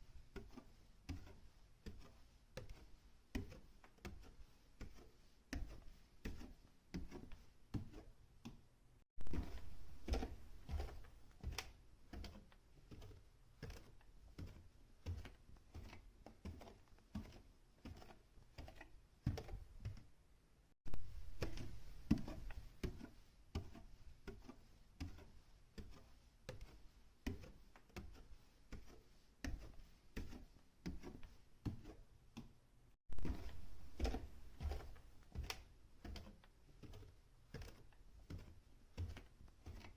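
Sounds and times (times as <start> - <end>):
footsteps on a staircase: 33.1 - 36.2.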